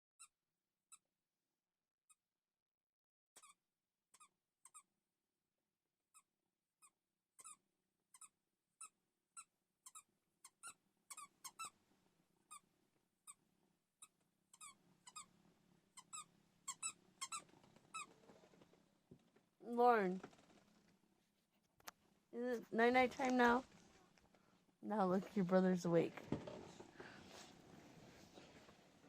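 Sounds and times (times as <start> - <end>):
squeaky toy squeaks: 3.4 - 4.9, 7.4 - 11.8, 14.5 - 15.3, 16.0 - 18.1.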